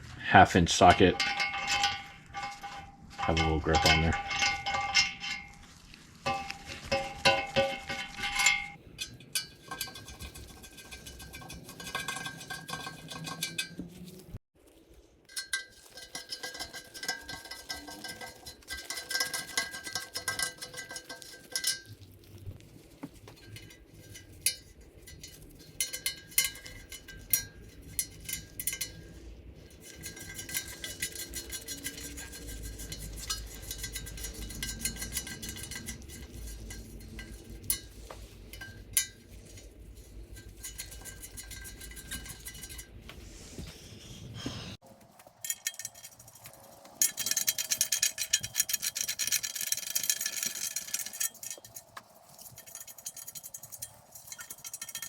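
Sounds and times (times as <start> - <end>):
small metallic clicks and clinks: 15.3 - 43.0, 45.0 - 55.0.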